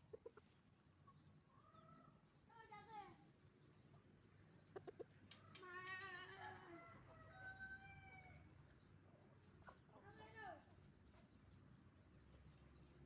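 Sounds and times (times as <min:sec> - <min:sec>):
chickens clucking: 0:00.0 - 0:02.3, 0:03.8 - 0:07.2, 0:09.4 - 0:10.1.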